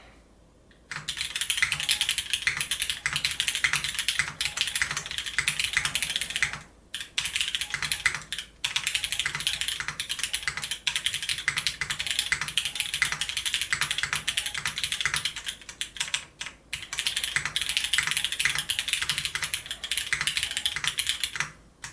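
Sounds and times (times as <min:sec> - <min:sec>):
mechanical keyboard typing: 0:00.9 - 0:21.9.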